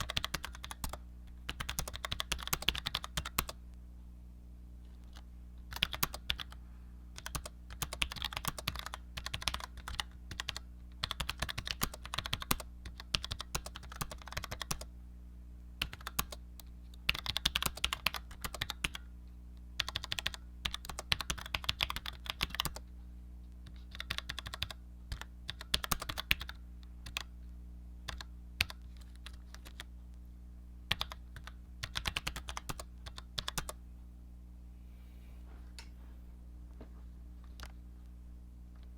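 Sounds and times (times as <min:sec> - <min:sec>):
steady low hum: 0:00.0 - 0:38.9.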